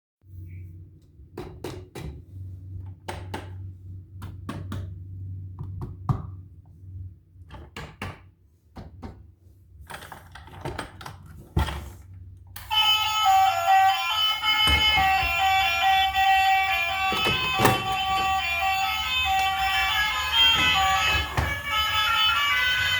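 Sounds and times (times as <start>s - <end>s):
background music: 12.7s - 22.9s.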